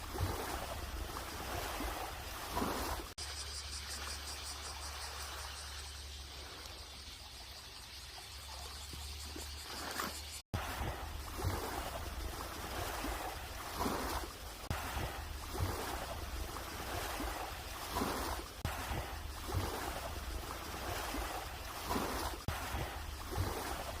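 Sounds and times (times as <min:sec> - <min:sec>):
wind rumbling on microphone: 0:00.0 - 0:03.1, 0:10.6 - 0:24.0
small waves washing in: 0:00.0 - 0:24.0.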